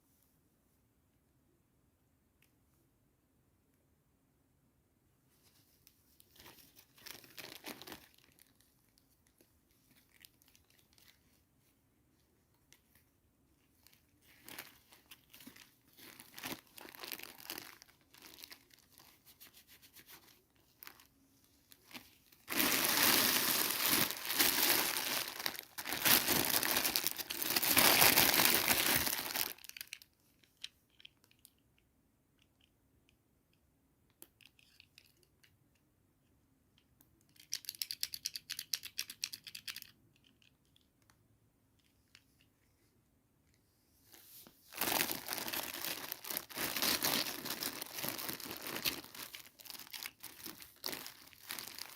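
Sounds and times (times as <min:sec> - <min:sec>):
packaging crinkling and rustling: 0:06.2 - 0:11.4, 0:12.7 - 0:30.2, 0:44.4 - 0:51.9
packaging tearing: 0:22.5 - 0:29.9, 0:44.8 - 0:51.9.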